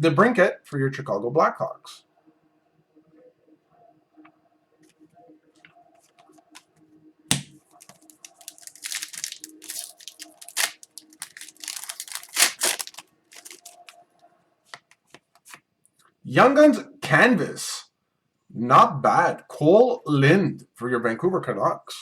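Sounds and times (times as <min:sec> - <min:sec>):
foil wrapper crinkling and tearing: 0:07.8 - 0:13.9.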